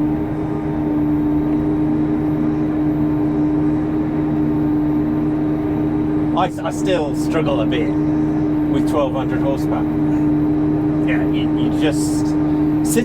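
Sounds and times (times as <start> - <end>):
forage harvester drone from cab: 0.0 - 13.0.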